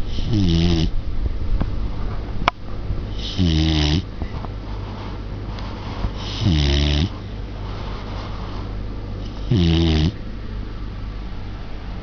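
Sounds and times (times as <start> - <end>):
puppy snoring: 0.0 - 1.0, 3.1 - 4.1, 6.1 - 8.6, 9.2 - 10.2.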